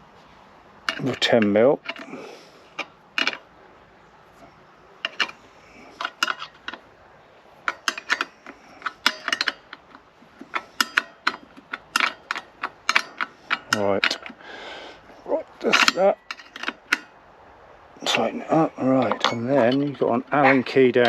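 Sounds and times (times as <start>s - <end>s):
spanner tightening nut clicks: 7.7s - 14.4s.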